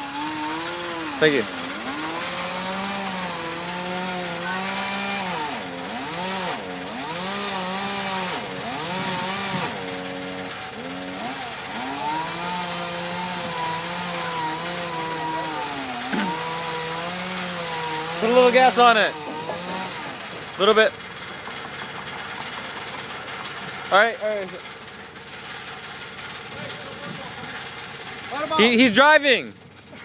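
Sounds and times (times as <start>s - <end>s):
chainsaw cutting tree trunk: 0.0s - 20.9s.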